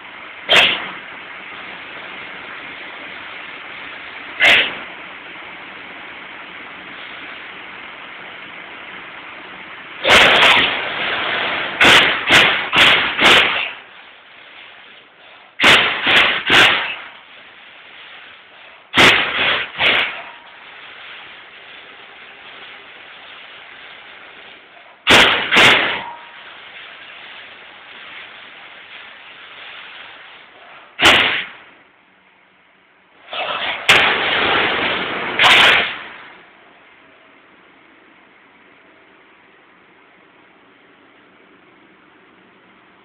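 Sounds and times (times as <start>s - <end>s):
steady background noise: 0.0s - 43.0s
steady machine hum: 0.0s - 43.0s
punching machine metallic bang: 0.5s - 1.0s, 10.0s - 13.8s, 15.6s - 17.1s, 18.9s - 20.5s, 25.1s - 26.4s, 31.0s - 31.7s, 33.3s - 36.4s.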